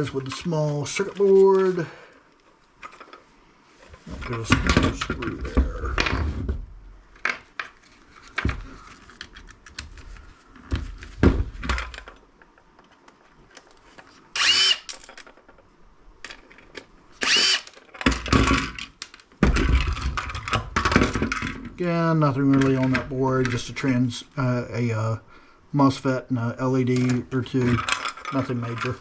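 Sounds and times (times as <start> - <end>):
clicks and knocks of parts handled: 2.3 - 3.2, 7.1 - 14.2, 14.8 - 21.8, 26.9 - 29.0
power screwdriver whine: 14.4 - 14.9, 17.2 - 17.8.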